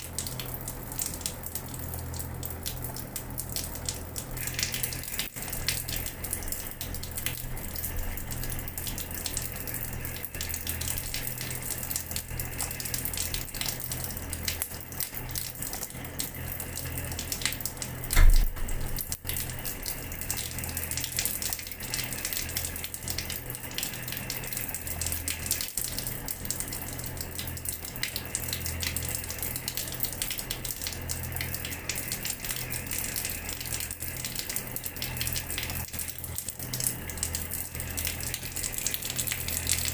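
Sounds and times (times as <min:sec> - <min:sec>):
tap water splashing onto floor: 0:17.2 - 0:19.6
low thud: 0:18.2 - 0:18.7.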